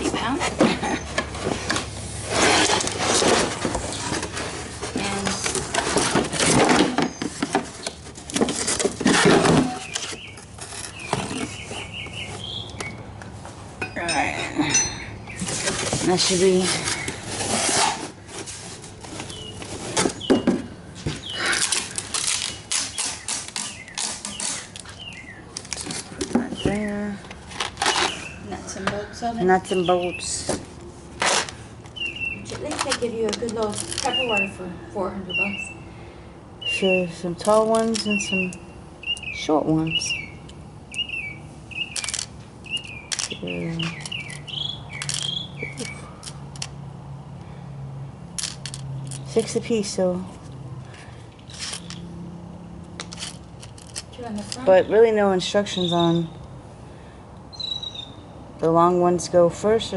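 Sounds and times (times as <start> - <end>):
bird chirping: 9.5 - 13.1, 13.9 - 15.8, 19.2 - 25.8, 27.8 - 28.6, 29.5 - 30.5, 31.9 - 33.2, 33.8 - 35.9, 36.6 - 46.2, 54.6 - 56.5, 57.5 - 58.4
packaging rustling: 21.1 - 26.4.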